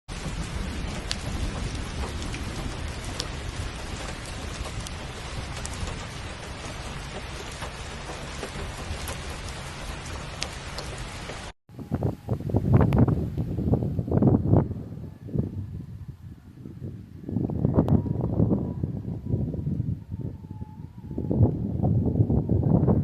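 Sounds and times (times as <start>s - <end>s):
low rumble: 0.1s - 10.0s
sharp ticks of raindrops: 0.1s - 11.6s, 12.8s - 13.5s
steady rain falling: 0.1s - 15.9s.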